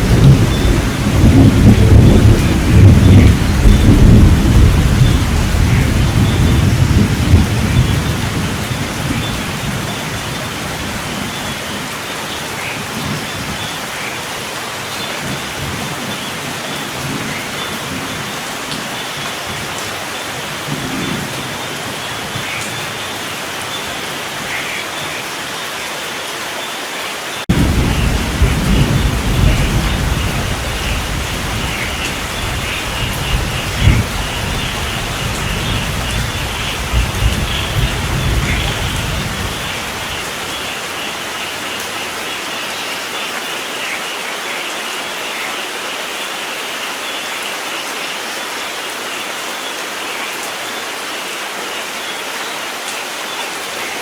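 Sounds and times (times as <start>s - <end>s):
rolling thunder: 0.0s - 10.2s, 27.5s - 40.8s
steady rain: 0.0s - 54.0s
sharp thunder crack: 27.5s - 39.8s.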